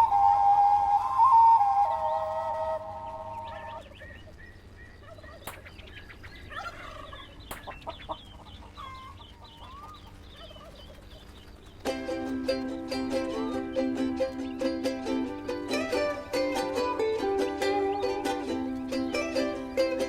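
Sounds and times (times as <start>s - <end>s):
whistle-like tone: 0.0s - 3.8s
turkey gobbling and chirping: 0.0s - 20.0s
sharp clicks: 5.4s - 5.8s.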